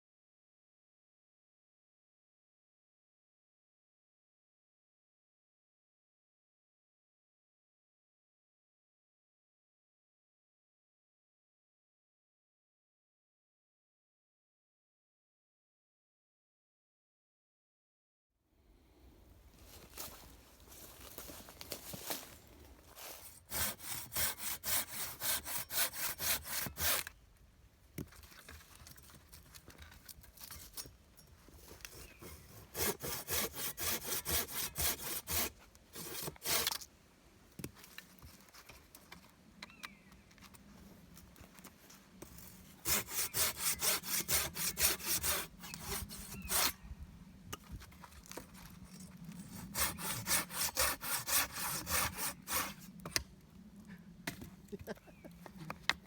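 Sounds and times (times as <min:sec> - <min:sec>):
hand saw cutting wood: 0:23.0 - 0:27.1, 0:31.5 - 0:36.9, 0:42.2 - 0:46.8, 0:49.4 - 0:53.2.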